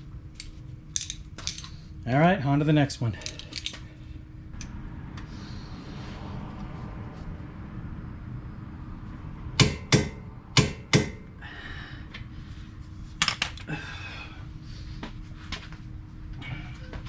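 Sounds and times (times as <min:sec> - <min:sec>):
tools rattling and scraping: 0:00.4 - 0:01.8, 0:03.1 - 0:04.0, 0:13.2 - 0:13.6.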